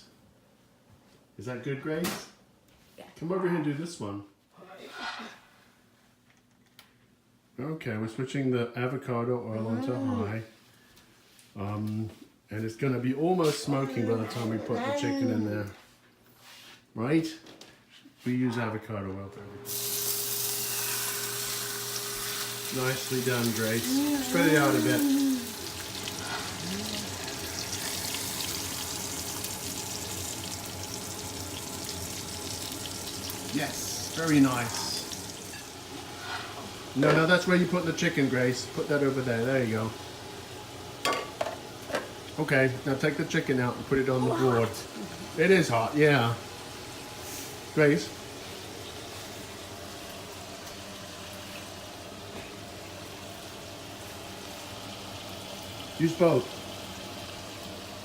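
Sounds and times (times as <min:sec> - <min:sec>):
chicken sizzling in a pan: 0:19.6 - 0:58.0.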